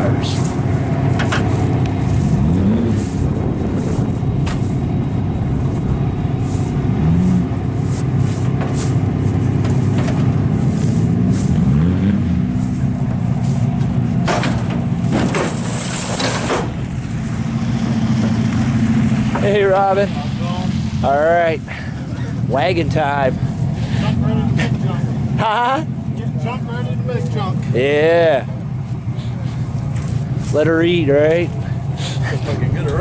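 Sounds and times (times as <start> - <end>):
car engines revving loudly: 0.0 - 33.0.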